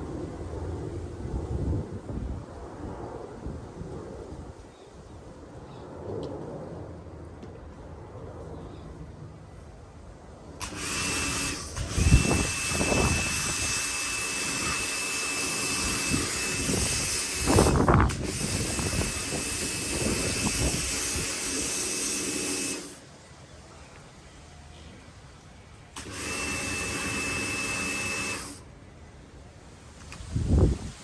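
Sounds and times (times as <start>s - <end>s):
pressure washer spraying: 10.6s - 23.0s, 26.0s - 28.6s.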